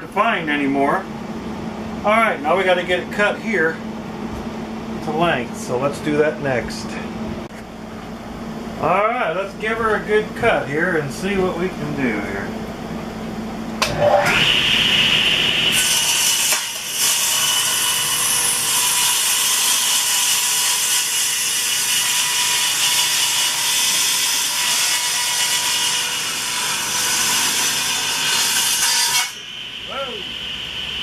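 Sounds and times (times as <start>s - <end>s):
power saw cutting wood: 13.8s - 31.0s.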